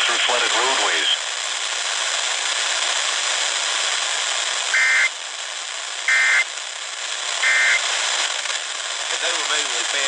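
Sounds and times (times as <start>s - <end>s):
radio hiss: 0.0s - 10.0s
two-tone digital screeches: 4.7s - 5.1s, 6.1s - 6.4s, 7.4s - 7.8s.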